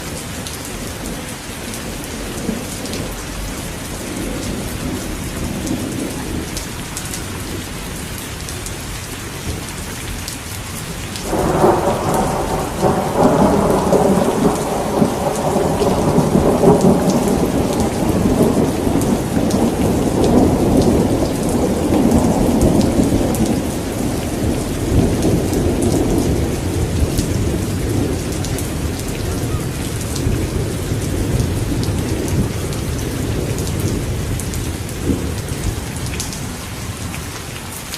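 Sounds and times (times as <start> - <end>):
steady rain: 0.0 - 37.9
rolling thunder: 11.2 - 37.3.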